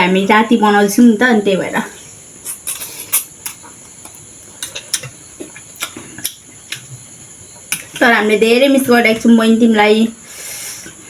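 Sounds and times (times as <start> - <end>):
high-pitched background whine: 0.0 - 11.0
chewing clicks and smacks: 3.5 - 6.9.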